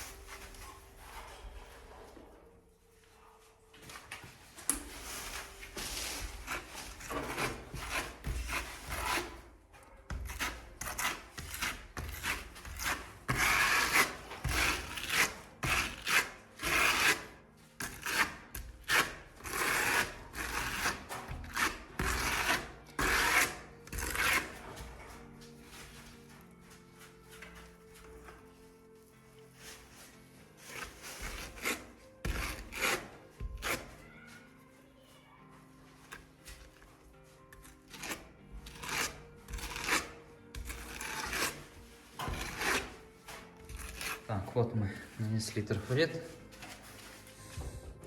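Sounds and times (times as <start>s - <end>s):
steel trowel scraping plaster: 4.7s - 26.2s, 29.6s - 34.0s, 37.5s - 47.7s.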